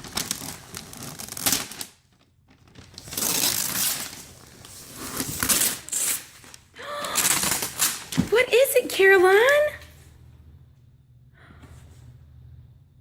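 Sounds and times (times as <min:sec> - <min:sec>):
wrapping paper crinkling and tearing: 0:00.0 - 0:08.2.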